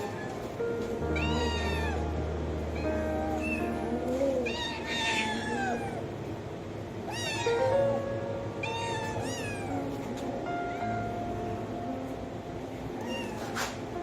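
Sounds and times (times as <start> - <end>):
background music: 0.0 - 4.5
cats meowing: 0.0 - 6.2, 7.0 - 10.8, 12.9 - 14.0.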